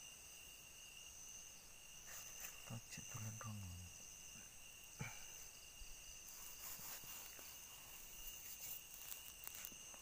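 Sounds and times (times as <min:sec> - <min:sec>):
crickets chirring: 0:00.0 - 0:10.0
faint rustling clicks: 0:06.3 - 0:10.0.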